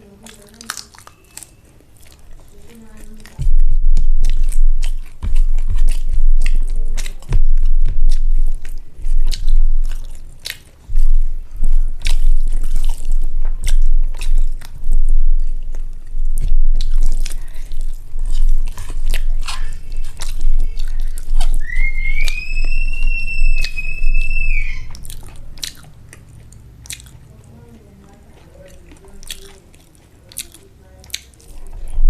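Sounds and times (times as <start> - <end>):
wet chewing and mouth clicks: 0.0 - 32.0
high whistle-like tone: 21.6 - 25.0.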